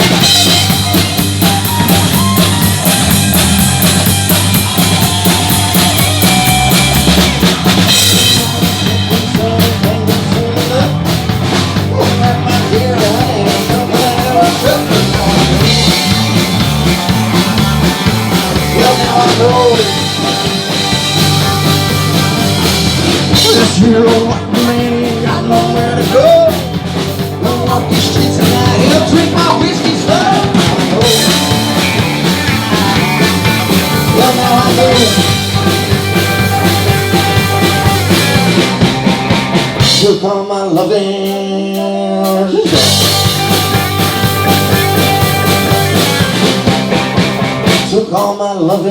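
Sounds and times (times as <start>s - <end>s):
lead guitar bends: 0.0s - 40.1s, 42.7s - 47.9s
rock band playing: 0.0s - 48.8s
drum kit: 0.0s - 48.9s.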